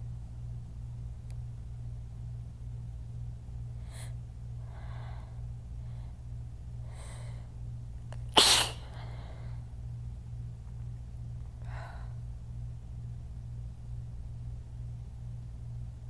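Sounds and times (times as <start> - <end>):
woman sneezing loudly: 8.4 - 8.9.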